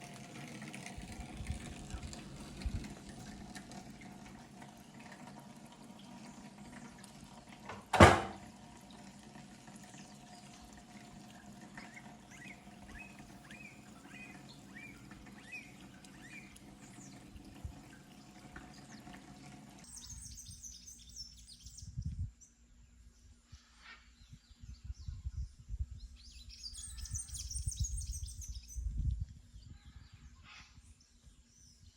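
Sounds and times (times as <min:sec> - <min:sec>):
sharp knock: 0:07.7 - 0:08.4
small birds chirping: 0:09.8 - 0:29.0.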